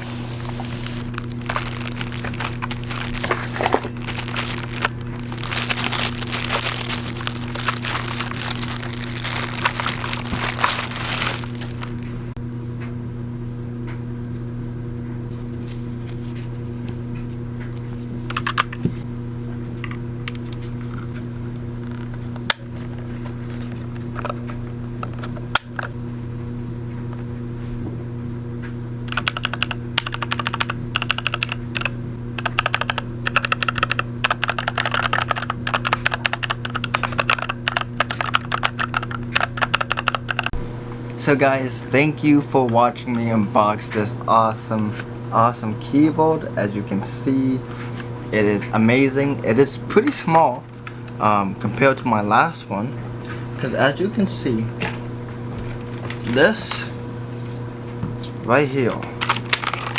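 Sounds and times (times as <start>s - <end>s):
steady low hum: 0.0s - 59.9s
packaging crinkling and tearing: 0.1s - 12.2s, 59.2s - 59.9s
keyboard typing: 29.1s - 40.5s.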